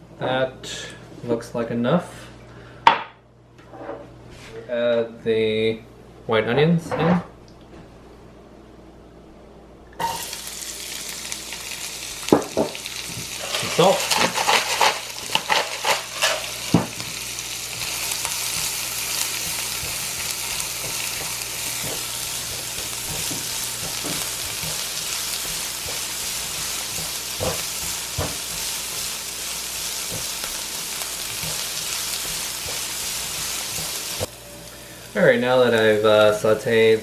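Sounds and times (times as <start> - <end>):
onions sizzling in a frying pan: 10.0 - 37.0.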